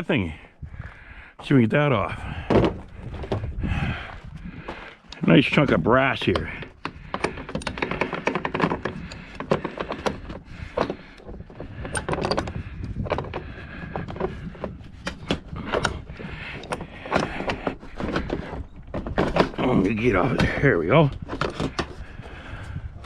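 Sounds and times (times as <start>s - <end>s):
hand tools on metal: 4.6s - 22.1s.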